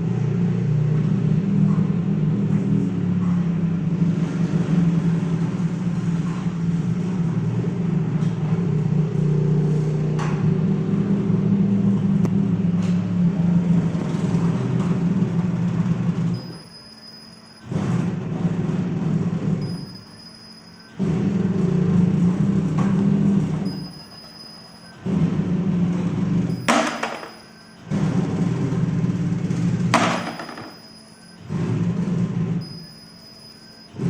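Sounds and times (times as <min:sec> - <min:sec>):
machine hum: 0:00.0 - 0:34.0
faint high whine: 0:16.3 - 0:17.8, 0:19.6 - 0:21.2, 0:23.6 - 0:25.1, 0:26.5 - 0:27.9, 0:30.0 - 0:31.5, 0:32.6 - 0:34.0.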